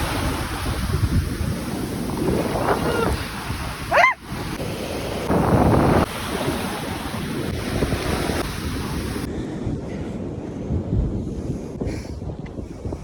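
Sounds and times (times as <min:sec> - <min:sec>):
ocean surf washing in: 0:00.0 - 0:09.3
wind buffeting microphone: 0:00.0 - 0:13.0.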